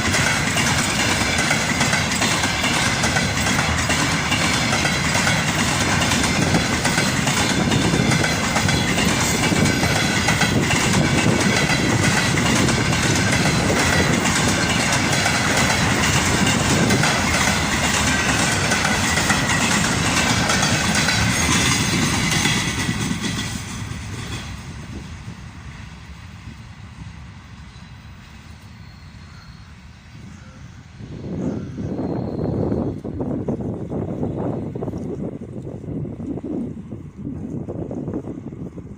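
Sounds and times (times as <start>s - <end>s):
wagon wheels clattering over rail joints: 0.0s - 24.4s
freight train rolling past: 0.0s - 38.9s.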